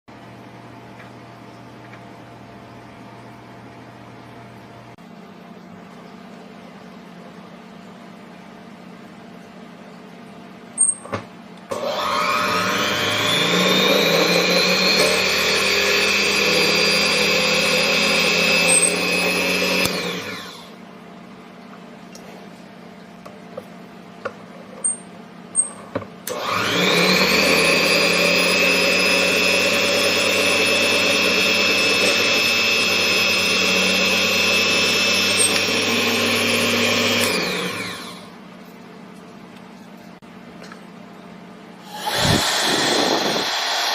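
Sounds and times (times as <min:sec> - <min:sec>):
power tool motor whining: 0:11.7 - 0:20.6, 0:26.3 - 0:38.3, 0:41.9 - 0:43.9.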